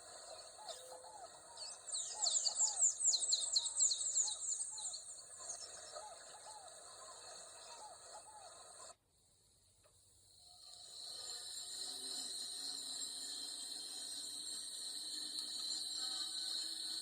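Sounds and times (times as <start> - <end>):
high insect drone: 10.8 - 17.0.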